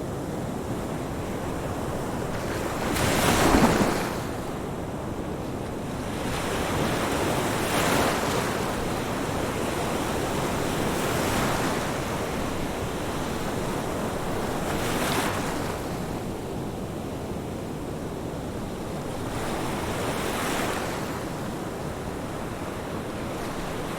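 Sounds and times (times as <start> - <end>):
ocean surf washing ashore: 0.4 - 5.0.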